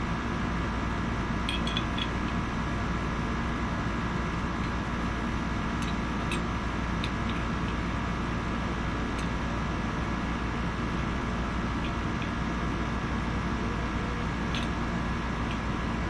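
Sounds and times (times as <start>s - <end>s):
steady room hum: 0.0s - 16.0s
faint clicks of small parts: 1.5s - 2.4s, 14.5s - 14.8s.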